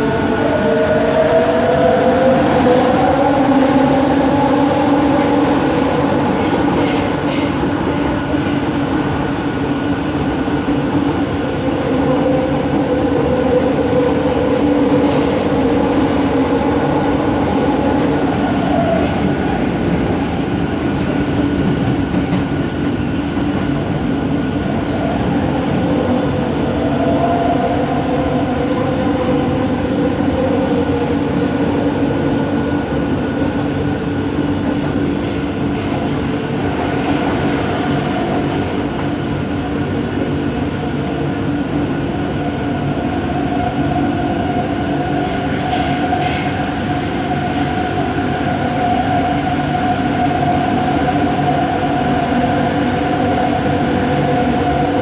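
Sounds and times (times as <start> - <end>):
train rolling noise: 0.0 - 55.0.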